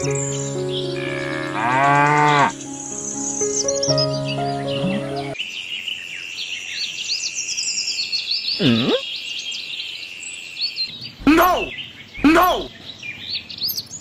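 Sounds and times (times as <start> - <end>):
birds chirping and tweeting: 0.0 - 14.0
swooping bird call: 11.2 - 12.7.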